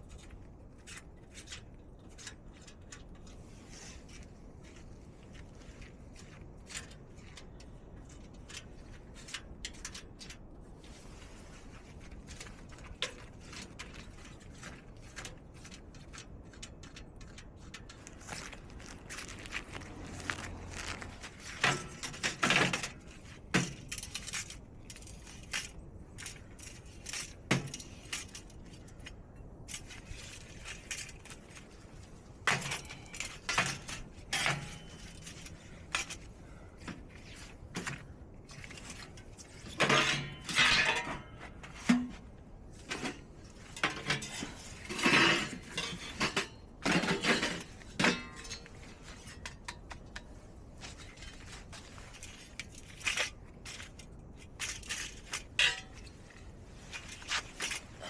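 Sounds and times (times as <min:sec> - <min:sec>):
metal cookware clinking and clattering: 0:39.8 - 0:41.3, 0:43.9 - 0:48.7, 0:55.6 - 0:56.0.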